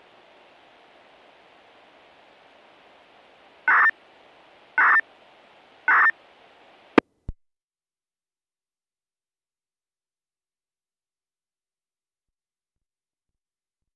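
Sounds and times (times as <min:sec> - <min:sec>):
radio hiss: 0:00.0 - 0:07.0.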